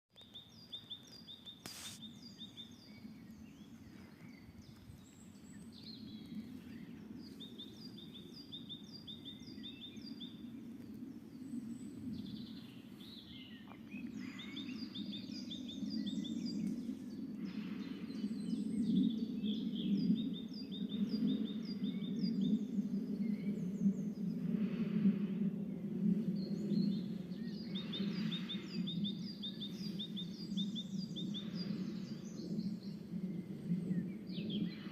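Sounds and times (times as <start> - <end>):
songbirds singing: 0.1 - 34.9.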